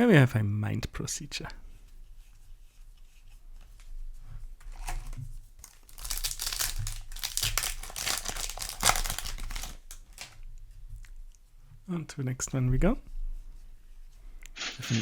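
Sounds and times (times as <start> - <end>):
foil wrapper crinkling and tearing: 4.6 - 10.4.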